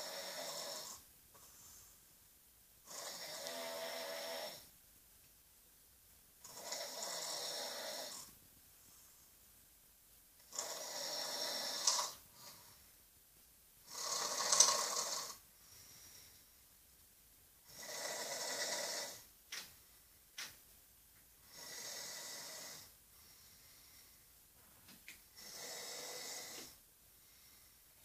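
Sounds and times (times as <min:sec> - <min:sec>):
loud snoring: 0:00.0 - 0:01.0, 0:02.8 - 0:04.7, 0:06.4 - 0:08.3, 0:10.5 - 0:12.7, 0:13.9 - 0:15.4, 0:17.6 - 0:19.3, 0:21.4 - 0:22.9, 0:25.4 - 0:26.8.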